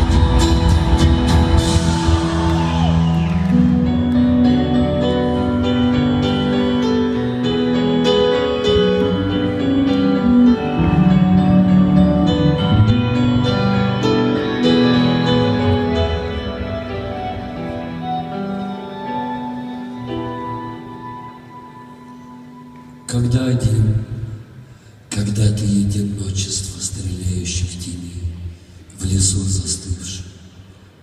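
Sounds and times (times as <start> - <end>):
rock band playing live: 0.0 - 20.4
keyboard chords: 0.0 - 24.7.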